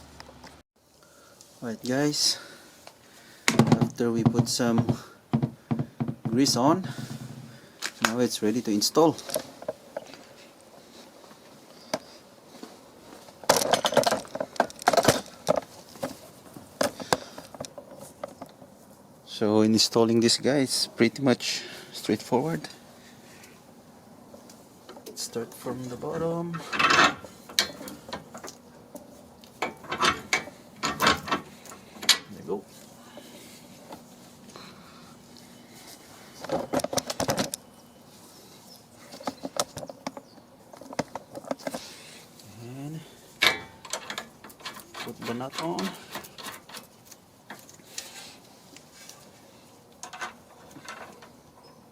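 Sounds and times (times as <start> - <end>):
metal tools clinking and rattling: 13.5 - 16.1, 26.2 - 28.6, 29.6 - 32.4, 43.4 - 48.1, 50.0 - 51.4.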